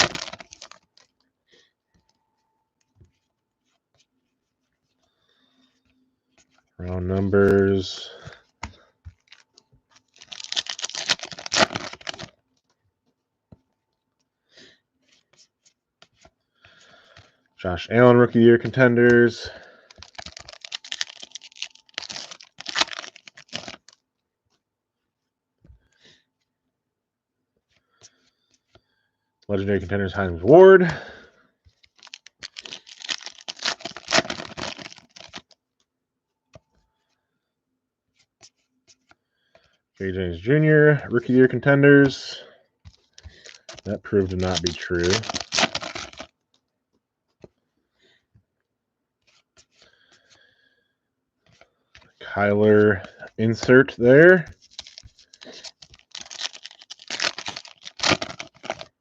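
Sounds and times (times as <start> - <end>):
trading cards crinkling: 0.0 - 2.2, 5.0 - 12.7, 14.6 - 24.0, 29.5 - 35.6, 38.2 - 46.6, 51.5 - 59.0.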